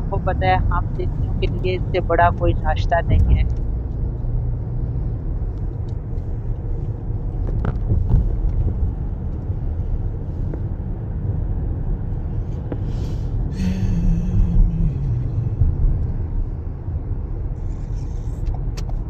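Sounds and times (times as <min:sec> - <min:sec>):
car road rumble: 0:00.0 - 0:19.0.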